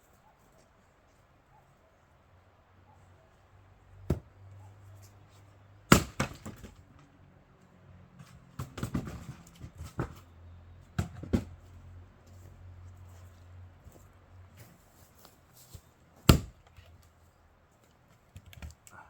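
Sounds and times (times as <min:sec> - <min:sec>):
axe chopping firewood: 0:04.0 - 0:04.3, 0:05.9 - 0:06.8, 0:08.6 - 0:10.2, 0:11.0 - 0:11.6, 0:16.2 - 0:16.9
split wood pieces knocking: 0:05.9 - 0:06.8.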